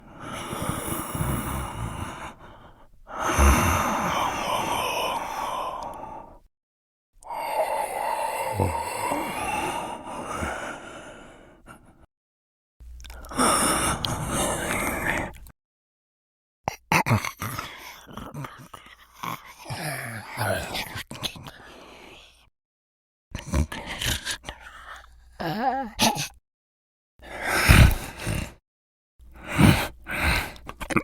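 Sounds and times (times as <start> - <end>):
slow drawn-out human breaths: 0.0 - 6.5, 7.2 - 12.1.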